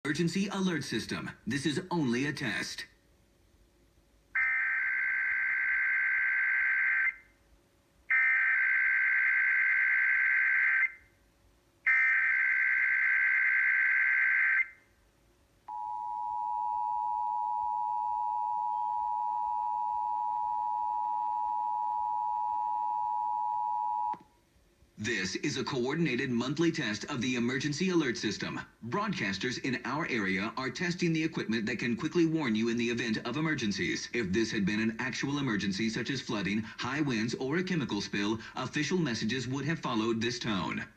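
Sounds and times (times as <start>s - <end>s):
two-tone attention signal: 15.7s - 24.2s.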